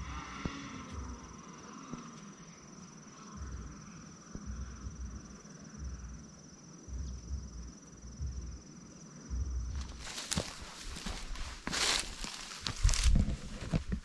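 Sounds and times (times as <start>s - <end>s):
insect trilling: 0.0s - 13.3s
dull footsteps: 9.3s - 14.0s.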